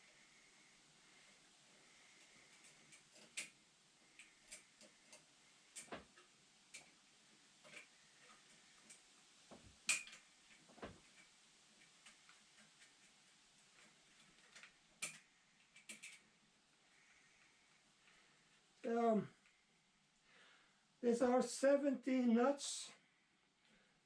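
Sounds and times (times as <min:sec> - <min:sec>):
small metal parts clicking: 0:02.2 - 0:07.0, 0:09.8 - 0:16.3.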